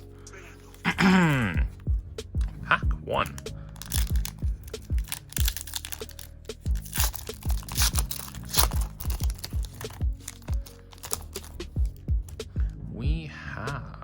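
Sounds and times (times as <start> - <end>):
lofi hip-hop music: 0.0 - 14.0
card pack wrapper tearing: 3.2 - 12.4.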